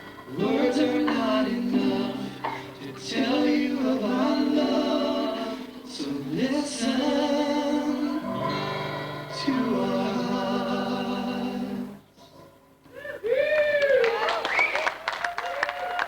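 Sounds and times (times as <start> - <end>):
voices singing a worship song: 0.0 - 12.2.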